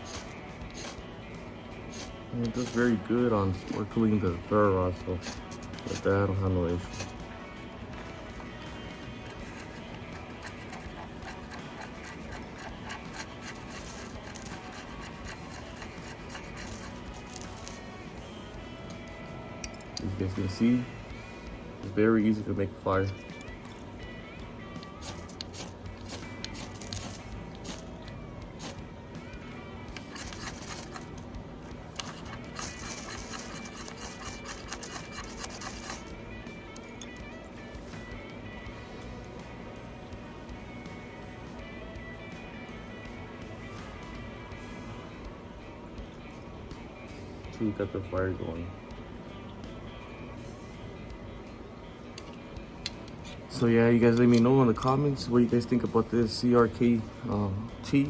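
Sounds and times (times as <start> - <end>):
knife scraping a ferro rod: 5.2 - 6.1, 9.2 - 17.8, 29.9 - 36.1.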